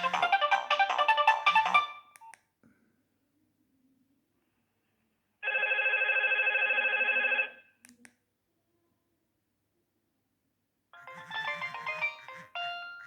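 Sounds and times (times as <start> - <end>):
polyphonic phone ringtone melody: 0.0 - 2.0, 11.0 - 13.0.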